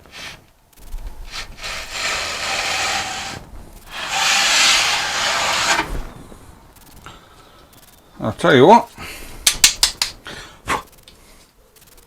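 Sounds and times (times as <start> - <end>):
hand tool rasping along wood: 1.3 - 6.1.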